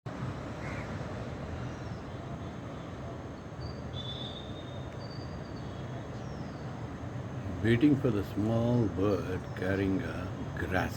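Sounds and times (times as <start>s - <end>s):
thin high whistle notes: 3.6s - 5.4s.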